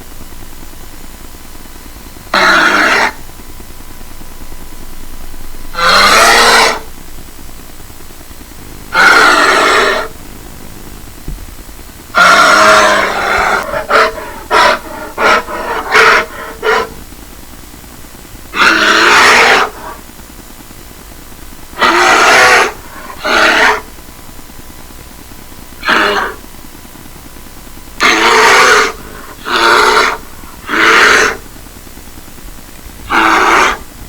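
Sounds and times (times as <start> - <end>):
bear grunting: 2.3 - 3.2, 5.7 - 6.9, 8.8 - 10.2, 12.1 - 17.0, 18.5 - 20.0, 21.8 - 23.9, 25.8 - 26.4, 28.0 - 31.5, 33.1 - 33.9
bear roaring and growling: 2.3 - 3.2, 5.7 - 6.9, 8.9 - 10.2, 12.1 - 17.0, 18.5 - 20.0, 21.8 - 23.9, 25.8 - 26.4, 28.0 - 31.4, 33.1 - 33.9.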